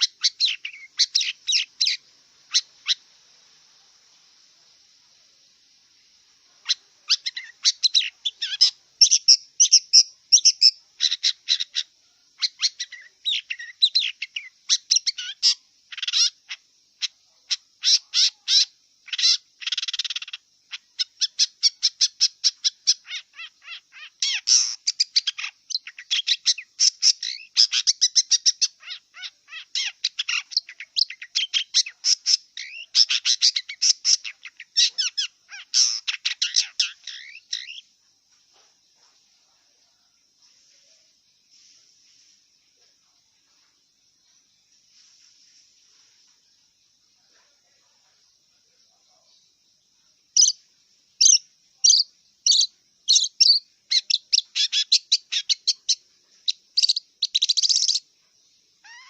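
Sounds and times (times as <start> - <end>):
bird chirping and chattering: 0.0 - 3.1, 6.6 - 37.9, 50.3 - 50.6, 51.2 - 58.0, 58.8 - 59.0.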